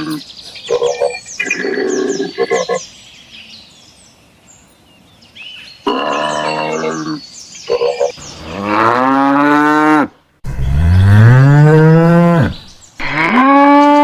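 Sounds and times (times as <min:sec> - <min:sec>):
cows mooing: 0:08.4 - 0:14.0.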